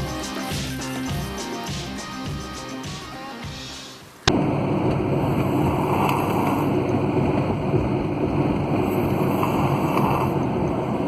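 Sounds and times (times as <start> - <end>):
loud steady rumbling: 4.3 - 11.0.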